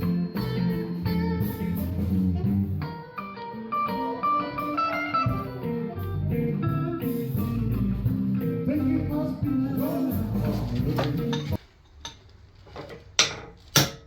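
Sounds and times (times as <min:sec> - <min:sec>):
plucked guitar notes: 0:00.0 - 0:08.8
low bass line: 0:05.3 - 0:11.5.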